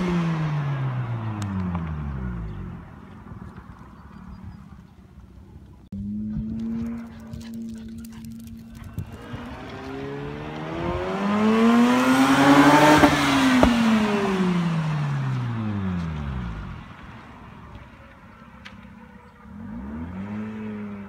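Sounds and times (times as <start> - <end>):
rotary engine revving: 6.0 - 16.7, 19.4 - 21.0.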